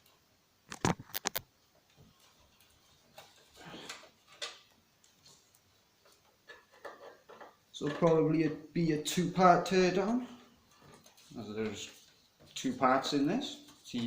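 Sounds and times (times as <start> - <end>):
scraping and rubbing of parts: 0.7 - 8.3.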